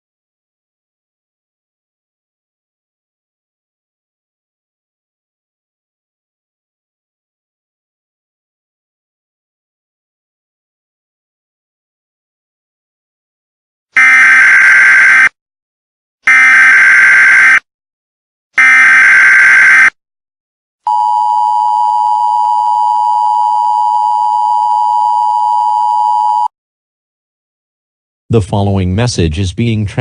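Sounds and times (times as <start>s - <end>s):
steady dual tone attention signal: 14.0s - 15.3s, 16.3s - 17.6s, 18.6s - 19.9s
buzzy digital data chirps: 16.3s - 17.6s, 18.6s - 19.9s.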